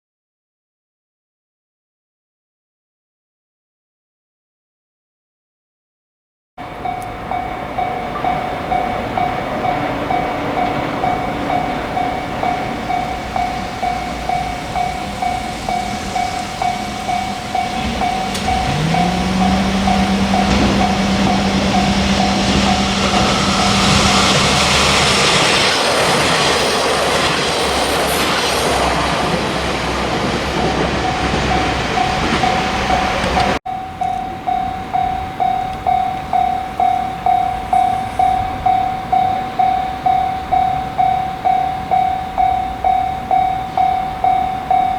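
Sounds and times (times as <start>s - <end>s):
steady low tone: 6.6s - 27.4s, 29.0s - 44.9s
level crossing warning bell: 6.6s - 44.9s
train wheels clattering over rails: 6.6s - 44.9s.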